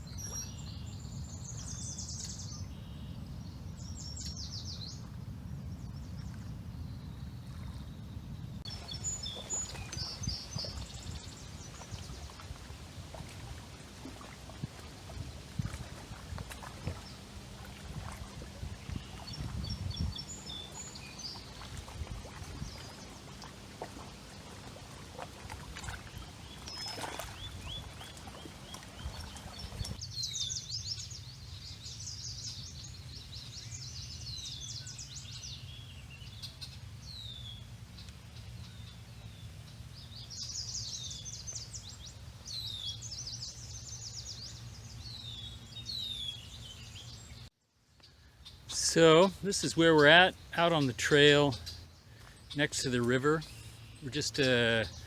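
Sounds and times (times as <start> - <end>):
birds singing and calling: 0.0 - 5.1, 5.7 - 55.0
river water rushing: 20.2 - 30.0.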